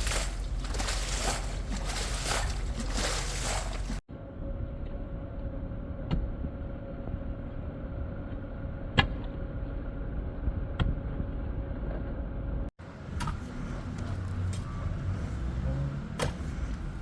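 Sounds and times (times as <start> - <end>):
engine running with low rumble: 0.0 - 17.0.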